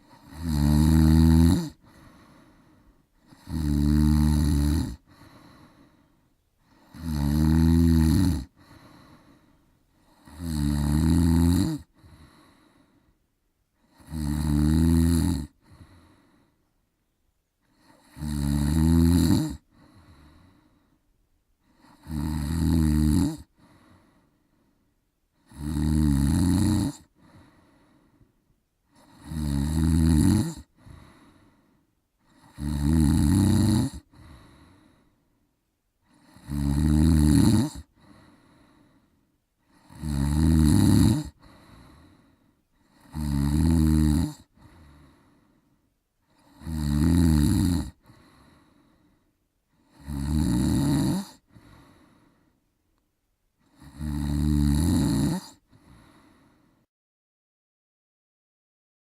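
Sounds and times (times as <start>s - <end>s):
loud snoring: 0.0s - 2.6s, 3.2s - 6.0s, 6.6s - 9.4s, 10.0s - 12.9s, 13.8s - 16.4s, 17.6s - 20.7s, 21.6s - 24.2s, 25.4s - 27.9s, 28.9s - 31.6s, 32.2s - 35.1s, 36.0s - 39.0s, 39.6s - 45.3s, 46.2s - 48.9s, 49.7s - 52.3s, 53.6s - 56.6s
soft breath: 1.8s - 3.4s, 5.0s - 7.0s, 8.5s - 10.3s, 11.8s - 14.0s, 15.5s - 18.0s, 19.6s - 22.0s, 23.4s - 25.5s, 27.0s - 29.1s, 30.6s - 32.5s, 34.0s - 35.5s, 37.8s - 39.9s, 41.3s - 43.1s, 44.4s - 46.6s, 47.9s - 50.0s, 51.4s - 52.8s, 55.5s - 56.9s.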